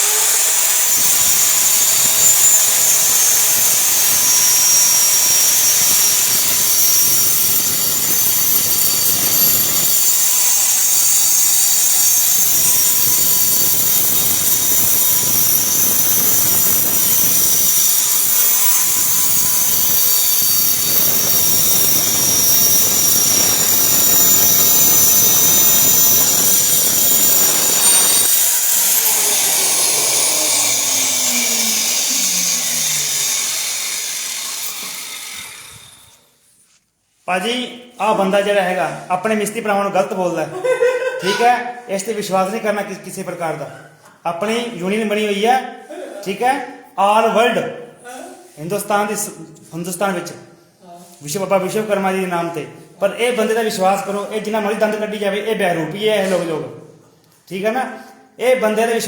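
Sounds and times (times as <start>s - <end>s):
power tool high whine: 0.0s - 36.4s.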